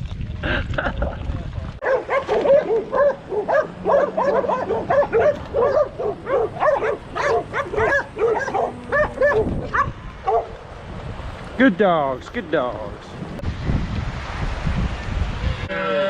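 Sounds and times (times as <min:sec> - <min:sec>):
dogs barking and baying: 0:01.8 - 0:10.6.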